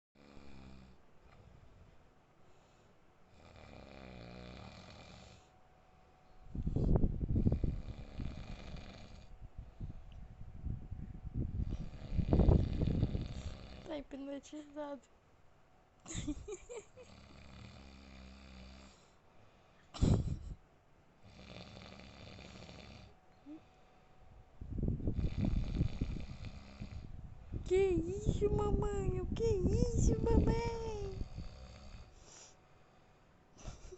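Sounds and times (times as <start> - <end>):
man snoring: 0.2 - 1.0, 3.3 - 5.5, 7.5 - 9.3, 11.6 - 13.9, 17.1 - 19.1, 21.2 - 23.7, 25.1 - 27.1, 31.1 - 32.2
quiet breathing: 0.2 - 10.4, 11.1 - 14.0, 17.2 - 20.5, 21.2 - 27.7, 31.0 - 33.9
loud snort: 25.1 - 27.1.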